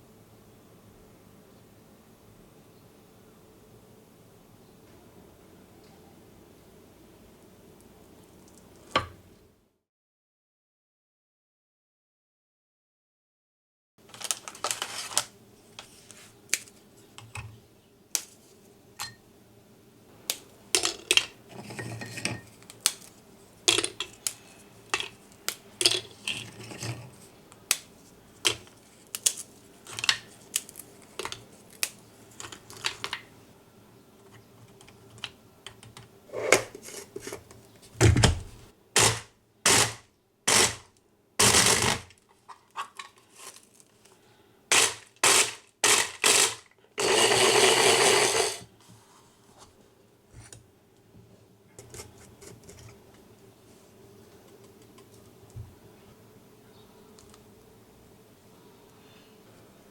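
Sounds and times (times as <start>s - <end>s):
utensils and containers clinking: 19.0s - 19.2s.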